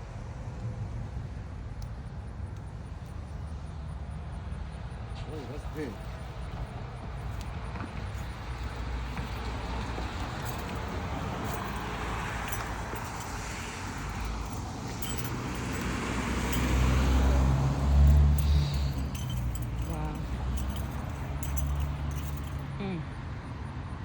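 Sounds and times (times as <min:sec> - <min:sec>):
engine running: 0:05.4 - 0:22.7.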